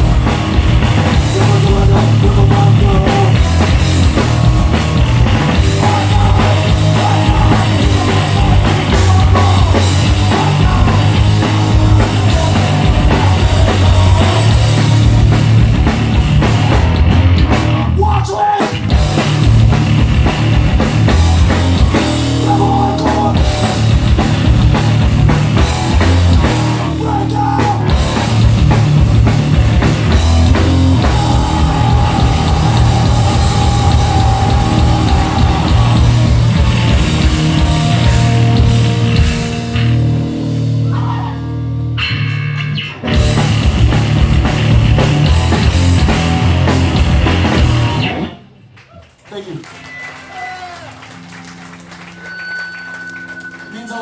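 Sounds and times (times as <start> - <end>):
hardcore punk band playing live: 0.0 - 48.6.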